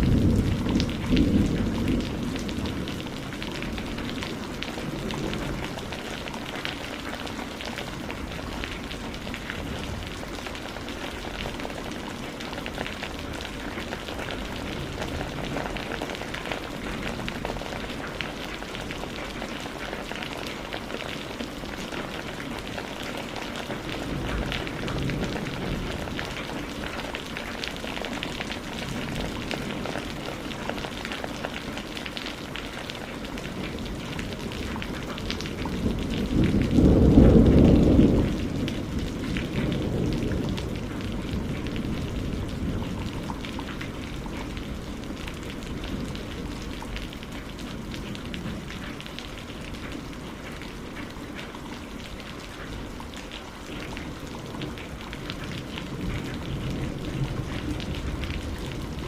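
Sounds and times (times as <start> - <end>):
low roll of thunder: 0.0 - 19.8, 22.0 - 30.7, 33.4 - 48.8, 53.8 - 59.0
steady rain: 0.0 - 59.0.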